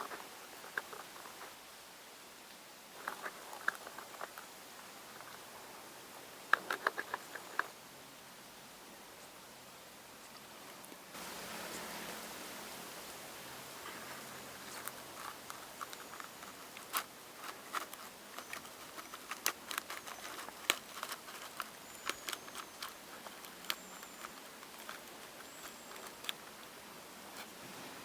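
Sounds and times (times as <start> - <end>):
faint clicks and crackles: 0.0 - 1.6, 2.5 - 5.5, 6.5 - 7.8, 13.8 - 27.6.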